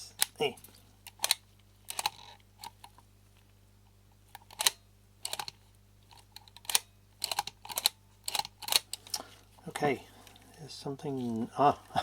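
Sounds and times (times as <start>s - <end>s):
steady low hum: 0.0s - 12.0s
lens mechanism clicks: 1.0s - 2.8s, 4.4s - 9.2s.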